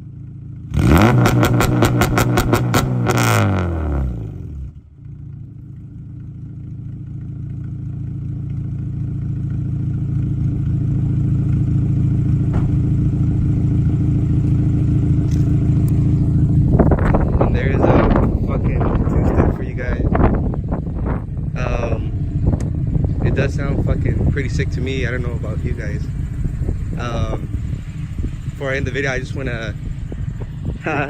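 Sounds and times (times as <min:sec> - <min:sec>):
exhaust crackling pops: 0:00.7 - 0:03.6, 0:05.0 - 0:13.6, 0:14.3 - 0:21.5, 0:22.3 - 0:28.6
car engine on launch limiter: 0:00.7 - 0:04.8.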